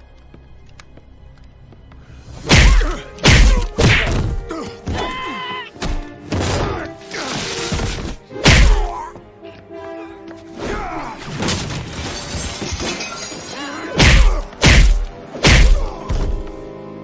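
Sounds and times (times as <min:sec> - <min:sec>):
film score: 0:00.0 - 0:17.0
punch and kick impacts: 0:02.4 - 0:05.1, 0:07.7 - 0:09.0, 0:14.0 - 0:16.4.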